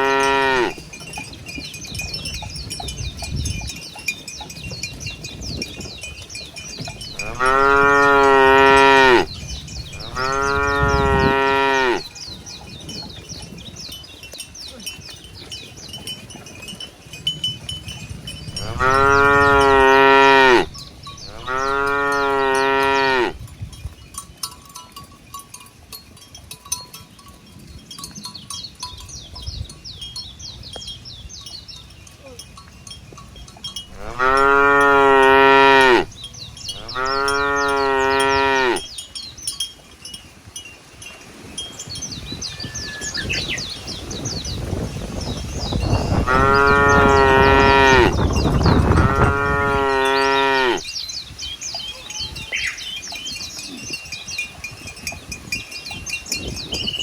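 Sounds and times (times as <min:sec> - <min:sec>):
cattle mooing: 0:00.0 - 0:00.8, 0:07.1 - 0:12.2, 0:18.5 - 0:23.4, 0:33.9 - 0:36.1, 0:36.7 - 0:38.9, 0:46.1 - 0:50.9.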